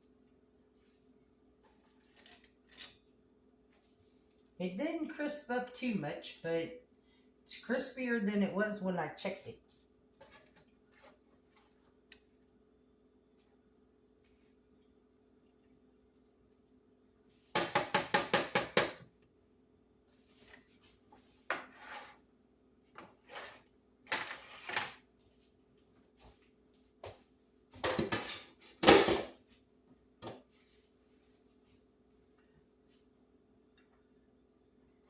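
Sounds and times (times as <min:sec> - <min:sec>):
faint steady hum: 0:00.0 - 0:35.0
kitchen utensils and dishes clattering: 0:27.8 - 0:29.4.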